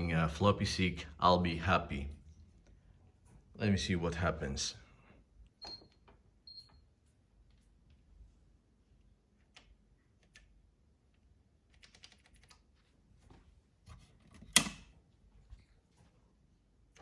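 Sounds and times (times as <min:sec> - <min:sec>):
computer keyboard keys tapping: 0:11.7 - 0:12.6.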